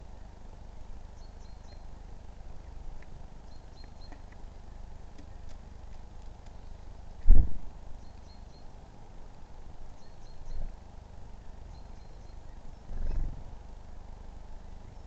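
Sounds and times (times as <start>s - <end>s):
low background rumble and hiss: 0.0s - 15.0s
faint ticks: 2.9s - 4.5s, 5.1s - 7.3s.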